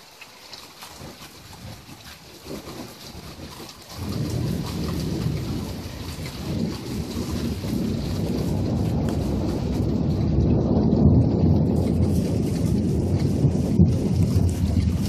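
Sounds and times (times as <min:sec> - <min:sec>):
heavy rain hissing and pattering: 0:00.0 - 0:15.0
loud low rumble: 0:04.7 - 0:15.0.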